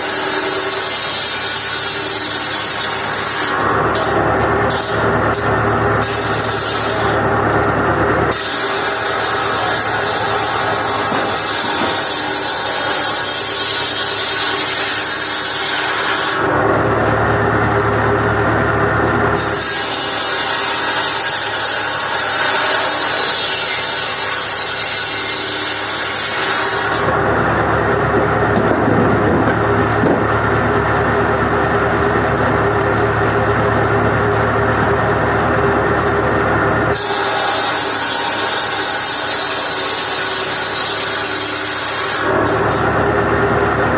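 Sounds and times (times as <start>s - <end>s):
circular saw cutting wood: 0.0s - 43.9s
tractor engine and spinning blade hum: 0.0s - 43.9s.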